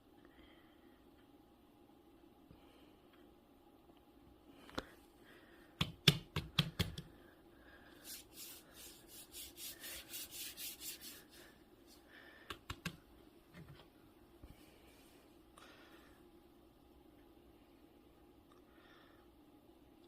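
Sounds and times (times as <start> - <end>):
rhythmic rubbing strokes: 8.0 - 11.5
sharp clicks and taps: 12.5 - 13.0.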